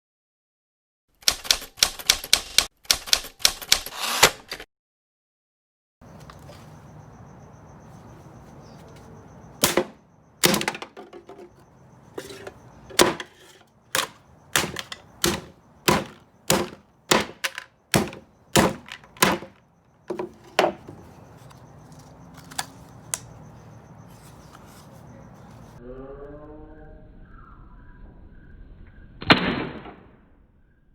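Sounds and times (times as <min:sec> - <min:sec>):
hammer crushing aluminium cans: 0:09.6 - 0:11.6, 0:12.2 - 0:21.0.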